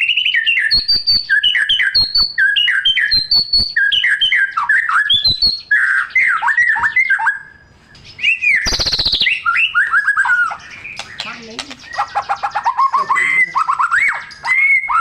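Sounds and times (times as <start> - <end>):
bird singing whistled song: 0.0 - 15.0
bird harsh rattle call: 8.6 - 15.0.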